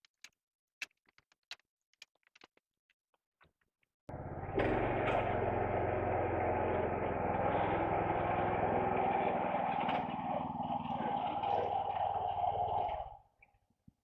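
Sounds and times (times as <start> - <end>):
small engine running: 4.1 - 13.3.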